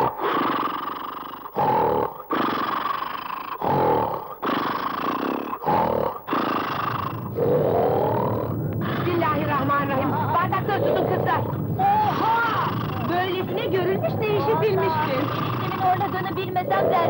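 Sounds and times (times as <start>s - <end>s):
man snoring loudly: 0.0s - 9.1s, 14.4s - 17.0s.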